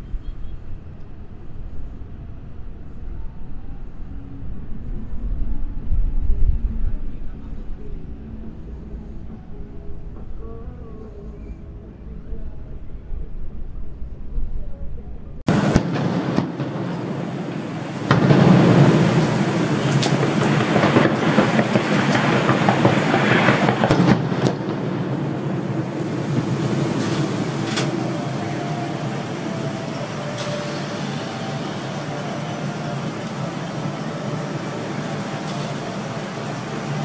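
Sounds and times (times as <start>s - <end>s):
road traffic hum: 15.4s - 37.0s
heavy vehicle passing: 15.5s - 37.0s.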